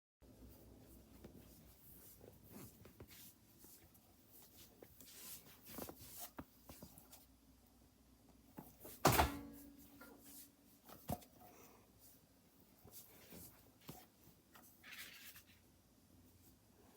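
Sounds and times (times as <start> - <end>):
door shutting thunk: 9.0 - 9.5
kitchen knocks and clicks: 9.0 - 9.6.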